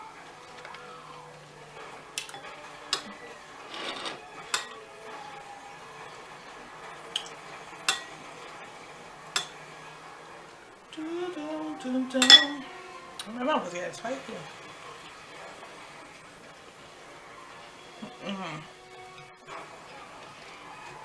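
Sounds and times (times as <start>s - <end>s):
cutlery scraping and tapping a dish: 2.1s - 4.9s, 7.1s - 8.4s, 9.3s - 9.8s, 12.2s - 12.7s.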